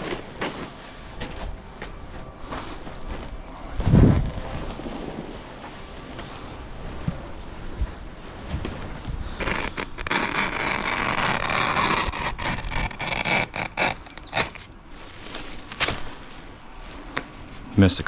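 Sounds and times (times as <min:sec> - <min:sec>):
utility knife slicing turf backing: 0:09.4 - 0:16.2.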